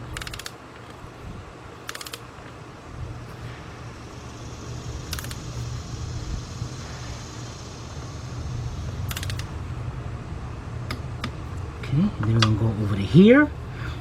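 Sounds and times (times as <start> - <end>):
steady low hum: 0.0 - 14.0
torque wrench ratcheting clicks: 0.1 - 0.6, 1.9 - 2.2, 5.1 - 5.4, 9.1 - 9.5.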